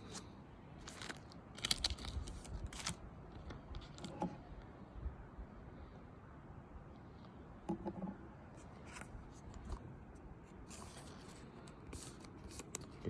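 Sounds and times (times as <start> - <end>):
trading cards rustling: 0.0 - 3.0, 10.6 - 13.0.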